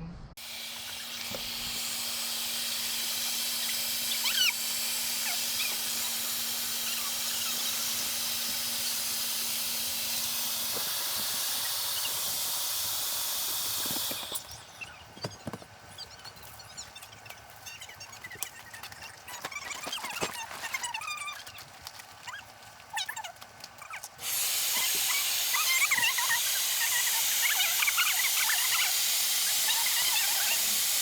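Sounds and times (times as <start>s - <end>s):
air rushing into inflatable tube: 0.8s - 14.6s
small clicks and rustles: 13.7s - 24.2s.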